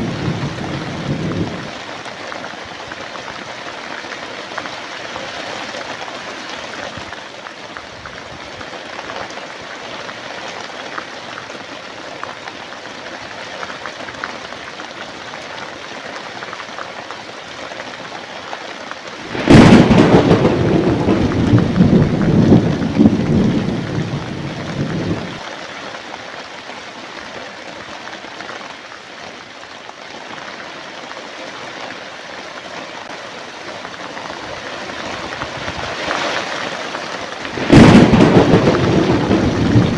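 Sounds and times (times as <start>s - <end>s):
thunder crack and rumble: 0.0s - 1.7s, 19.3s - 25.4s, 37.5s - 39.9s
heavy rain falling: 0.0s - 7.8s, 18.9s - 26.1s, 31.3s - 39.9s.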